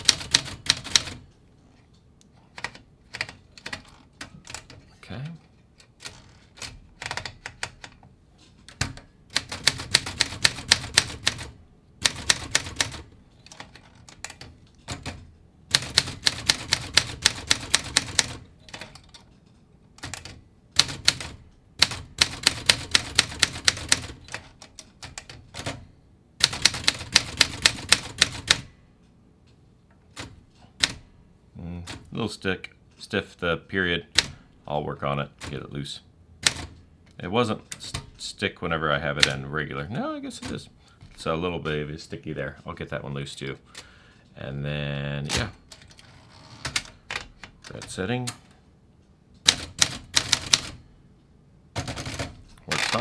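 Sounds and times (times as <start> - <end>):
manual typewriter key strikes: 0.0 - 1.2, 8.7 - 19.3, 20.0 - 25.8, 26.4 - 28.7, 36.4 - 36.9, 49.4 - 50.8.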